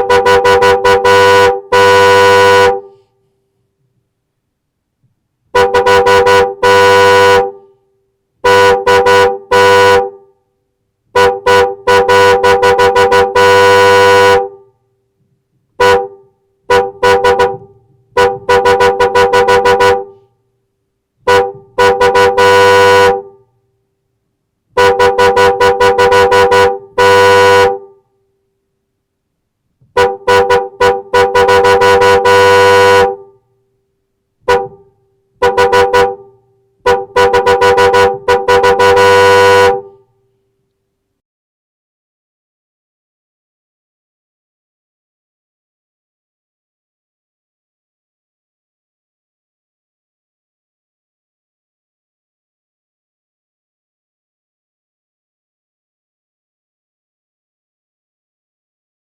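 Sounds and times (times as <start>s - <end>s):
car horn honking: 0.0s - 3.0s, 5.5s - 7.7s, 8.4s - 10.3s, 11.1s - 14.7s, 15.8s - 20.3s, 21.2s - 23.4s, 24.8s - 28.0s, 29.9s - 33.4s, 34.4s - 40.1s.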